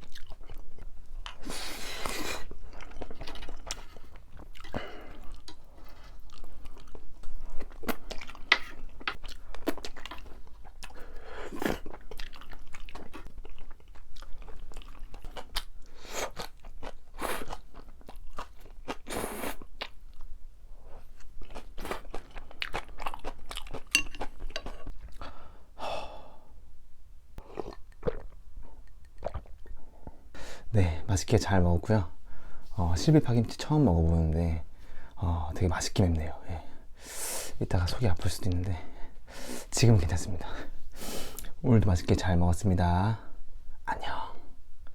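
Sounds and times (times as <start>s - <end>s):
chewing and crunching food: 0.0s - 25.4s, 27.4s - 30.2s.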